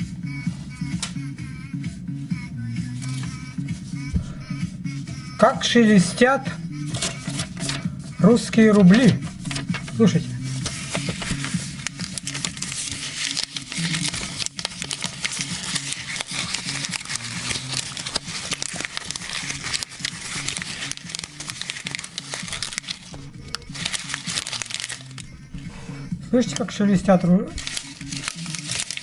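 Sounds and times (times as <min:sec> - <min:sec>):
paper banknotes crinkling: 0:03.0 - 0:03.4, 0:06.8 - 0:25.3, 0:26.4 - 0:29.0.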